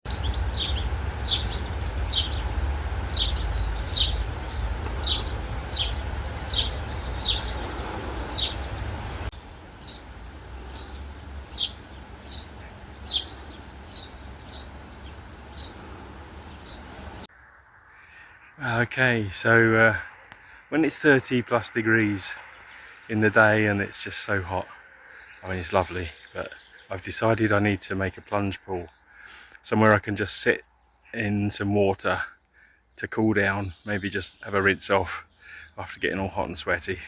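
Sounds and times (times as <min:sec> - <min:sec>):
bird call notes: 0:00.1 - 0:17.3.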